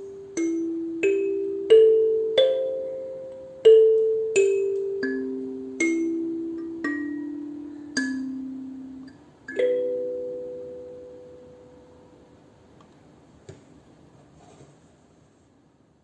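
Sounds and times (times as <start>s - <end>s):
kalimba tines plucked: 0.0s - 11.8s.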